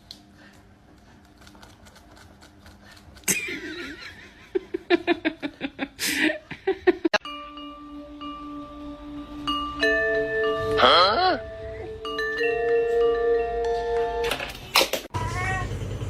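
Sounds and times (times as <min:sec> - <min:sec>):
person laughing: 0:03.2 - 0:07.2.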